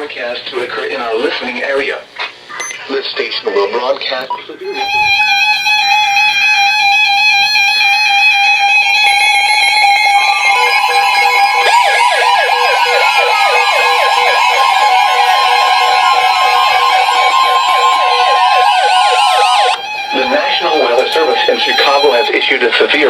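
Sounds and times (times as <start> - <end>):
wailing siren-like alarm: 4.7 - 23.0
steady weather radio alert tone: 8.8 - 23.0
warbling electronic alert tone: 9.0 - 22.5.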